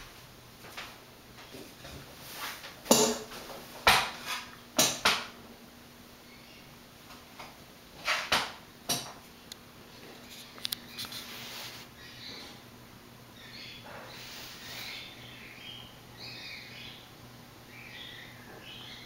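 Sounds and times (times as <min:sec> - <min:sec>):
ceiling fan humming: 0:00.0 - 0:19.0
sharp knocks and clatters: 0:02.8 - 0:05.3.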